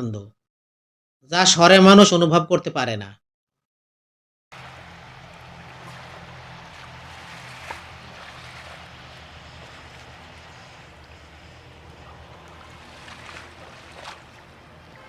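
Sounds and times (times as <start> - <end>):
low hum: 4.6 - 15.0.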